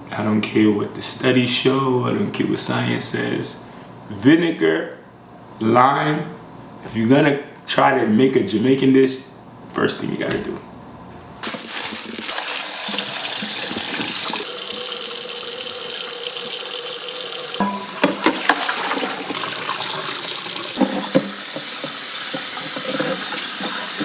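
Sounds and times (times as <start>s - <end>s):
tap running into sink: 11.9s - 24.0s
meat and bowl knocking: 17.6s - 23.9s.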